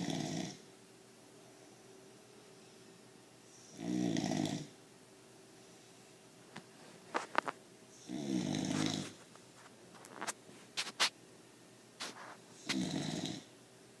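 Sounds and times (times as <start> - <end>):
puppy snoring: 0.0 - 0.7, 3.6 - 4.8, 8.0 - 9.3, 12.0 - 13.5.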